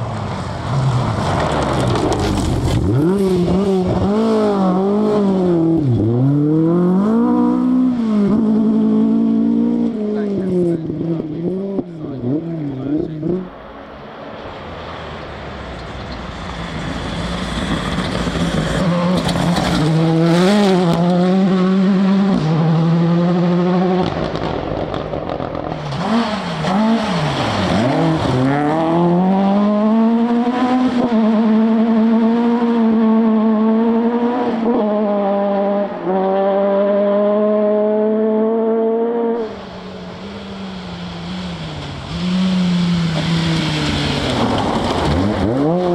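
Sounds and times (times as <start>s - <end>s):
rally car engine revving: 0.0s - 45.9s.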